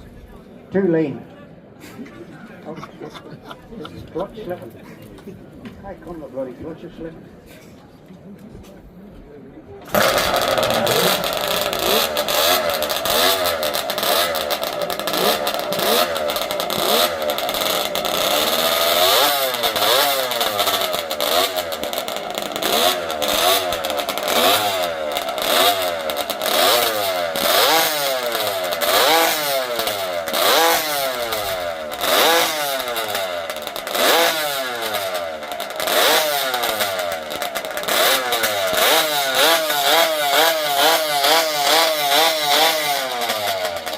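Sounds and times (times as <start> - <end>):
motorcycle engine revving: 9.8 - 43.9.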